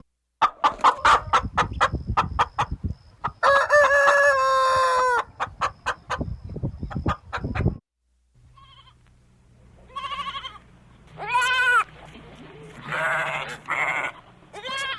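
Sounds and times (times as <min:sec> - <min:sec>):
chicken clucking: 0:00.4 - 0:07.8
rooster crowing: 0:03.4 - 0:05.3.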